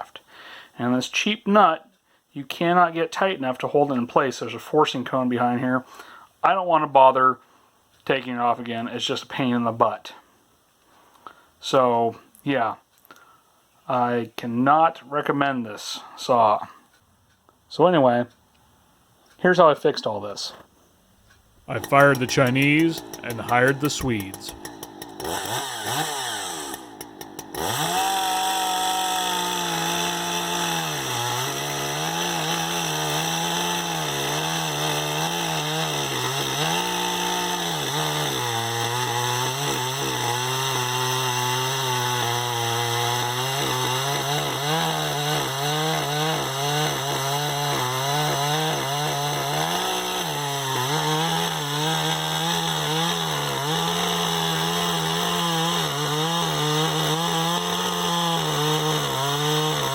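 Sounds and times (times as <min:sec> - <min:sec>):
chainsaw running hard: 0:21.7 - 0:59.9.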